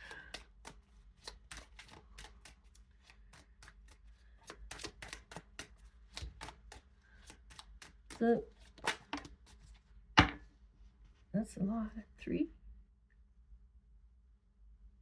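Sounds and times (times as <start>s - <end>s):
cards being shuffled: 0.0s - 9.9s.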